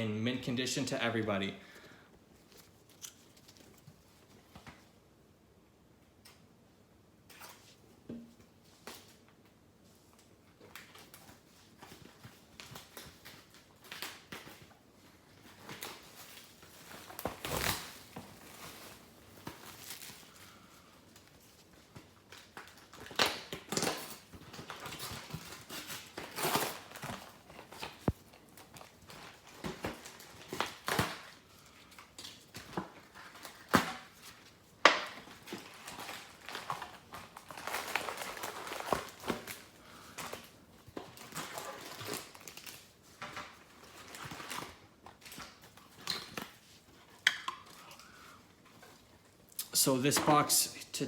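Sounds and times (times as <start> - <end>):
plastic wrapping crinkling: 10.6 - 49.6.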